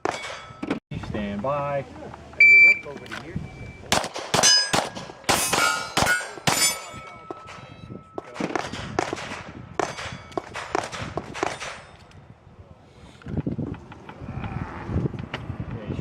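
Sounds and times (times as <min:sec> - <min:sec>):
steel plate ringing clang: 0:00.0 - 0:00.8, 0:04.3 - 0:08.4
pistol shots: 0:03.9 - 0:06.8, 0:08.2 - 0:11.9.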